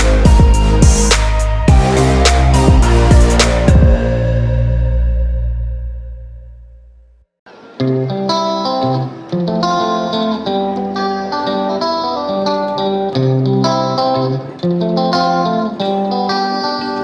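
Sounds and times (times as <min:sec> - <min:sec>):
plucked guitar melody: 0:07.5 - 0:17.0.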